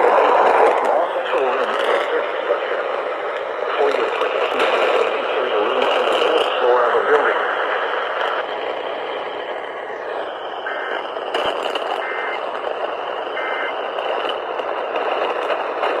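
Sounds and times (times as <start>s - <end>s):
radio static: 0.0s - 16.0s
digital data tone bursts: 10.6s - 11.1s, 11.9s - 12.4s, 13.3s - 13.8s.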